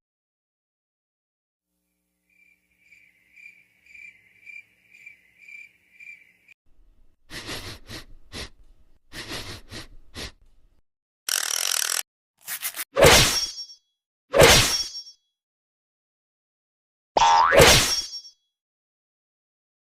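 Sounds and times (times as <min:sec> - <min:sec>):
cricket chirping: 0:01.9 - 0:06.6
sharp irregular bursts: 0:11.3 - 0:12.8.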